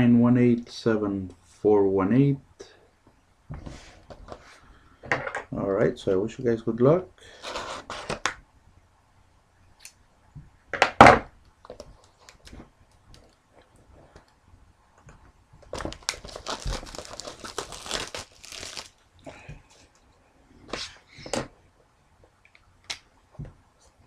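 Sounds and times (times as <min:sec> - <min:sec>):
plastic wrapper crinkling: 0:15.6 - 0:19.1
plastic wrapping ripping: 0:15.7 - 0:19.0.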